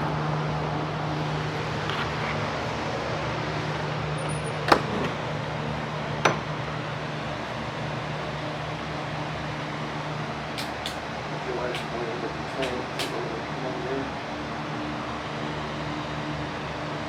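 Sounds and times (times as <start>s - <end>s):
sharp clicks: 10.6s - 11.0s, 12.6s - 13.2s.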